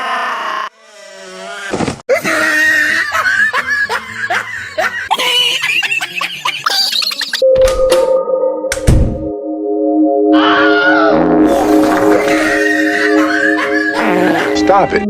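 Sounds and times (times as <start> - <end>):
pitch-shifted laughter: 2.1 - 7.4, 10.4 - 15.0.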